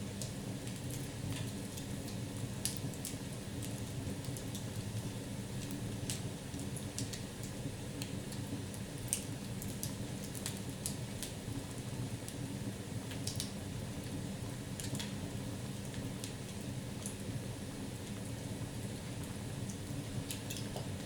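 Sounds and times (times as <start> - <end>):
fire crackling and popping: 0.2 - 4.8.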